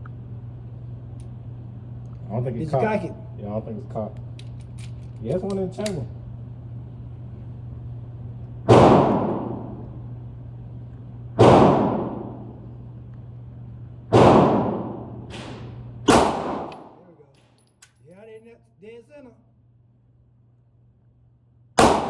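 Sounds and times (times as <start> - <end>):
gunshots with ringing tail: 8.7 - 9.8, 11.4 - 12.6, 14.1 - 17.0, 21.8 - 22.0.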